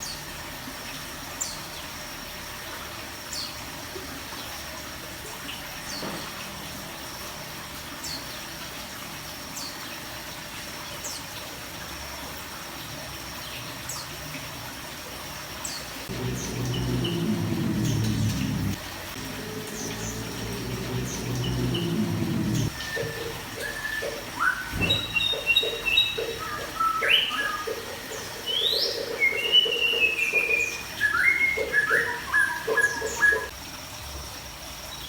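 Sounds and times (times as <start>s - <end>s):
cage birds chirping: 15.7s - 33.5s
high-pitched whine: 16.0s - 27.5s
low rumble: 16.1s - 23.6s.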